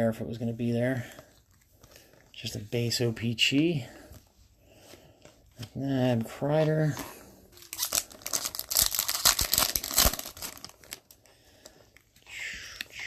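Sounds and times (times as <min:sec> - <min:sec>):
wrapper tearing and crinkling: 0:07.5 - 0:11.2.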